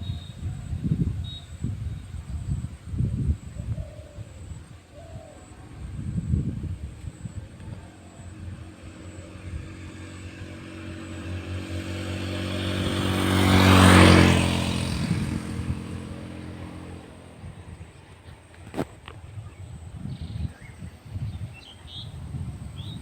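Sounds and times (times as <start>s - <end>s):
vehicle passing by: 5.4s - 18.3s.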